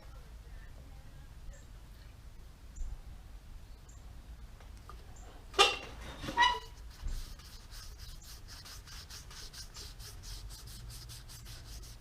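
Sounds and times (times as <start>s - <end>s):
short squeak: 5.6s - 6.8s
cloth rubbing wooden bowl: 6.1s - 12.0s.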